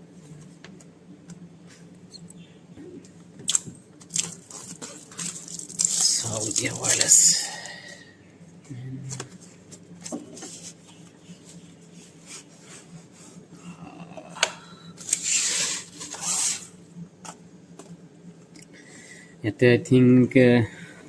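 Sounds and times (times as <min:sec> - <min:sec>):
packaging rustling: 0:04.0 - 0:07.3.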